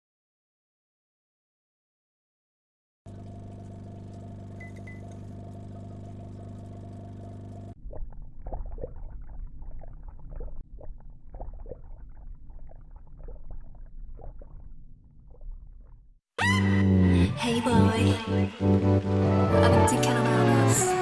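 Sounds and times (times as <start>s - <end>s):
low rumble with crackles: 3.1s - 16.2s
loud electronic music: 16.6s - 21.0s.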